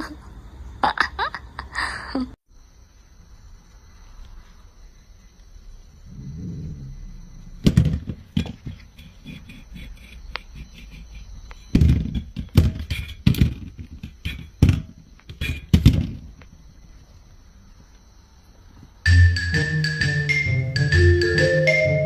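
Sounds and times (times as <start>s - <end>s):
irregular thuds and knocks: 7.5s - 9.6s, 11.6s - 16.5s.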